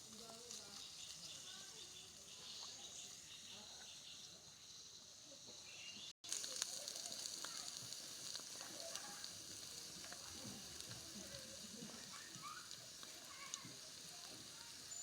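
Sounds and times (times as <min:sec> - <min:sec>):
oil popping and crackling: 0:00.0 - 0:03.0, 0:06.2 - 0:15.0
food sizzling in oil: 0:00.0 - 0:15.0.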